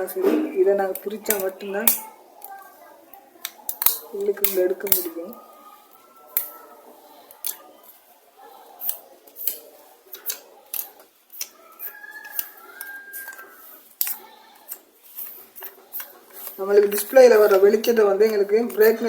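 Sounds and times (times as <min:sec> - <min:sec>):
hand tools clicking on plastic: 0:00.9 - 0:05.4, 0:08.8 - 0:19.0.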